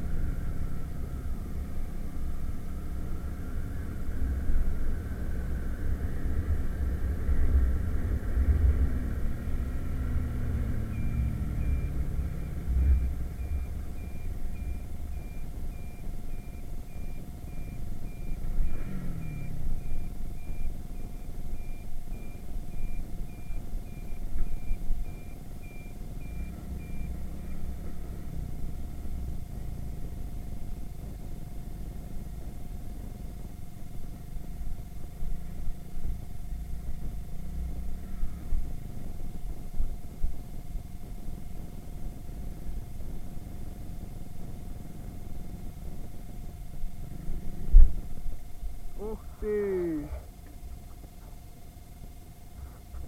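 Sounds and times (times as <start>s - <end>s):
moped engine running: 0.0s - 53.0s
high beep: 10.9s - 18.4s
wind rumble on microphone: 27.8s - 49.0s.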